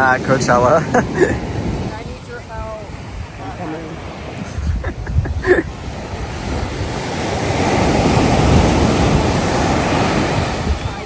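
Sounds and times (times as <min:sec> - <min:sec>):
ocean wave washing in: 0:00.0 - 0:11.0
wind buffeting microphone: 0:00.0 - 0:11.0.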